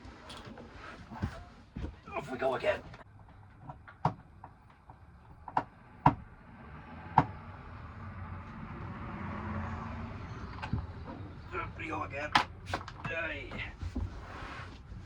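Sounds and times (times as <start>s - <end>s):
sharp knocks and clicks: 3.6s - 6.2s.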